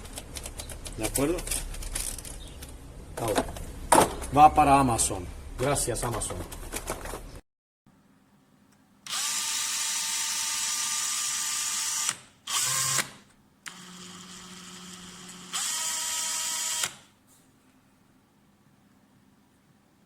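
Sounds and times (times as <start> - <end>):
cordless drill motor running: 9.1 - 17.0.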